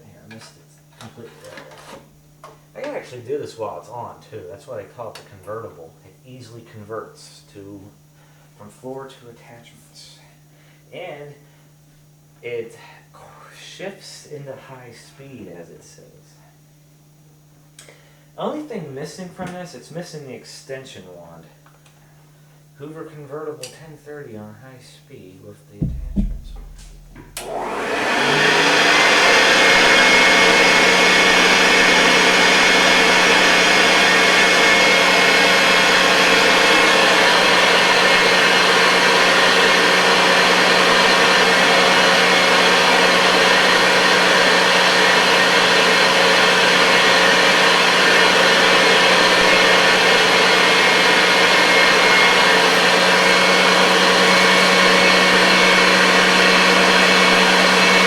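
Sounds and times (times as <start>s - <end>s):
vacuum cleaner motor whining: 25.8s - 58.0s.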